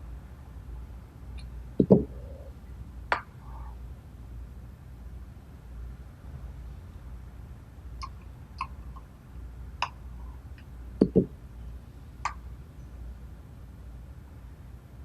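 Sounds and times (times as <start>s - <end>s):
loud knocks on workbench: 1.8s - 2.1s.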